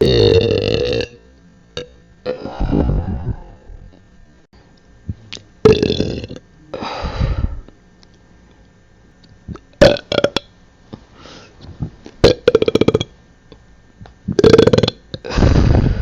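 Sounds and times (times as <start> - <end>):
person burping loudly: 0.0 - 1.2, 1.8 - 3.7, 5.6 - 6.4, 9.8 - 10.5, 12.2 - 13.1, 14.3 - 15.8.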